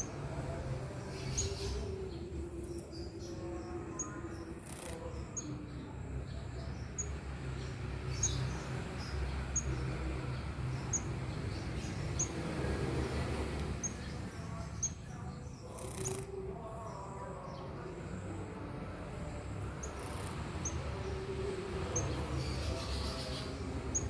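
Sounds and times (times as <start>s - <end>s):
steady background noise: 0.0s - 24.0s
bird chirping high-pitched: 10.8s - 12.4s.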